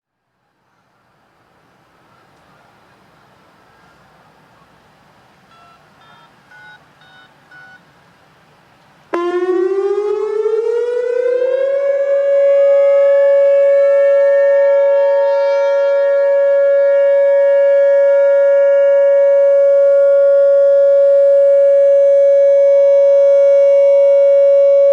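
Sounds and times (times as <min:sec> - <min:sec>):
short beeps: 0:05.5 - 0:07.8
warning siren: 0:09.2 - 0:24.9.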